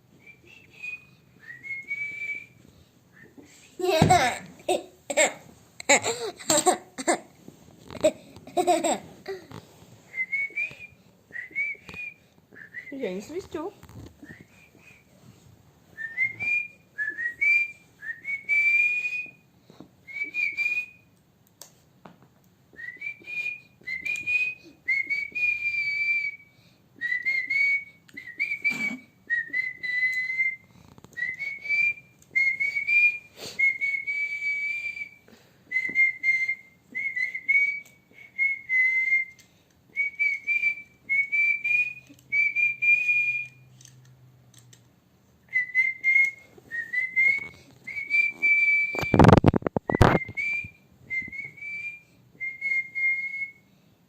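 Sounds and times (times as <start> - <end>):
person whistling sliding notes: 10.1 - 12.9, 16.0 - 19.4, 27.0 - 39.4, 45.6 - 53.7.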